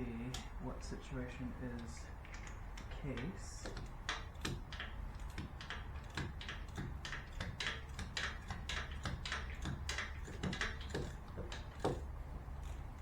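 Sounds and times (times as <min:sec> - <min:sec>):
ratchet wrench clicking: 0:01.8 - 0:12.0.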